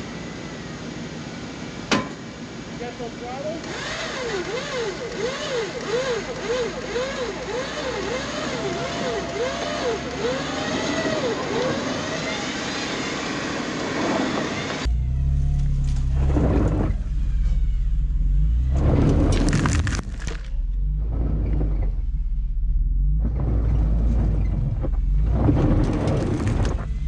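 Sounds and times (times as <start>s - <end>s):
vehicle engine labouring: 0.0s - 27.0s
tyres crunching in dirt: 18.5s - 22.0s, 23.2s - 27.0s.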